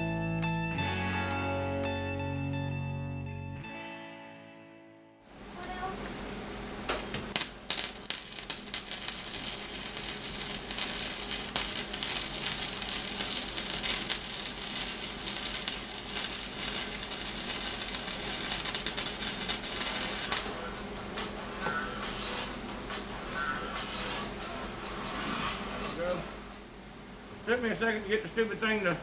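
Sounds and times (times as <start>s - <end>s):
welding arc crackling: 7.0s - 20.8s.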